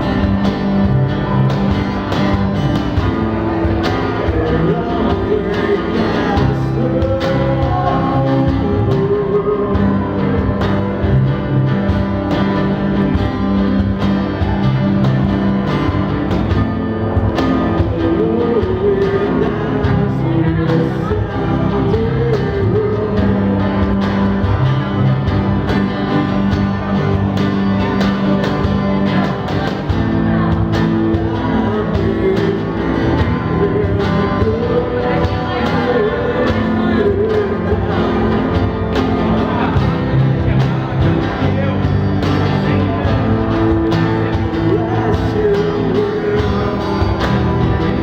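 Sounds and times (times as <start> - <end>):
acoustic guitars: 0.0 - 48.0
cajon beats: 0.0 - 48.0
person singing: 3.2 - 11.7, 17.0 - 25.2, 28.6 - 48.0.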